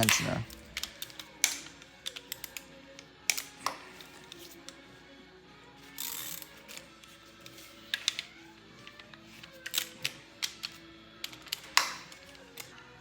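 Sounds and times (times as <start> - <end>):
metallic clicks of hand tools: 0.0 - 4.8, 7.9 - 8.4, 9.0 - 12.8
soft background music: 0.0 - 13.0.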